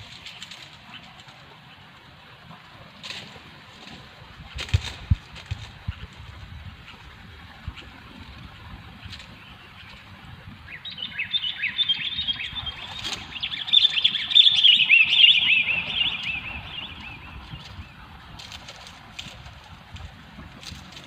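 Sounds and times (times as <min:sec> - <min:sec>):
bulbul chattering call: 0:10.7 - 0:18.0.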